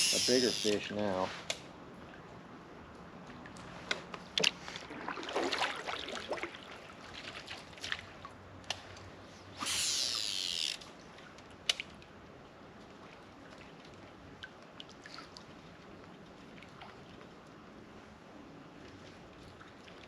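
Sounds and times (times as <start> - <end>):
water sloshing against kayak: 3.4 - 8.3.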